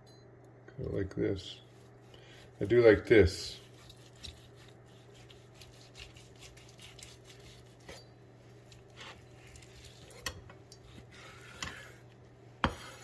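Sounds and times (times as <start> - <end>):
steady low hum: 0.0 - 13.0
knife scraping through meat: 3.5 - 8.1, 8.7 - 13.0.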